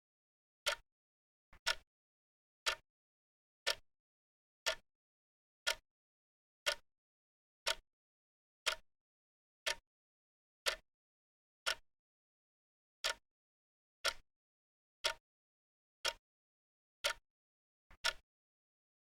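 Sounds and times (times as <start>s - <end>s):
clock ticking: 1.6s - 1.8s, 17.9s - 18.2s.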